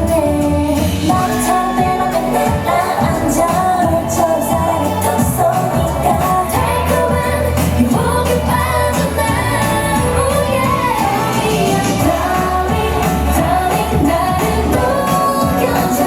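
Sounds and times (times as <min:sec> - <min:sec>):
pop backing track with beat: 0:00.0 - 0:16.0
women singing: 0:00.0 - 0:16.0.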